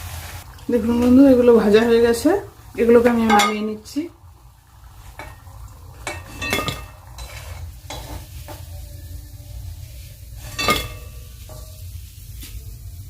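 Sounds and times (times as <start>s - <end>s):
oil sizzling: 0.0s - 13.0s
metal utensil clinking on a pan: 3.2s - 3.8s, 5.2s - 8.7s, 10.4s - 11.9s.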